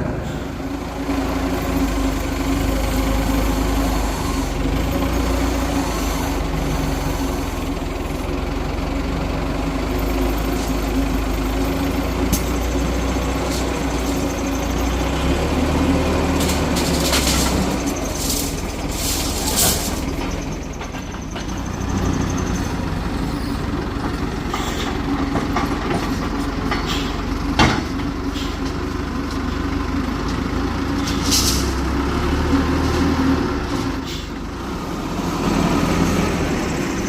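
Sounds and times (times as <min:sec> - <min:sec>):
heavy construction machine engine: 0:00.0 - 0:37.0.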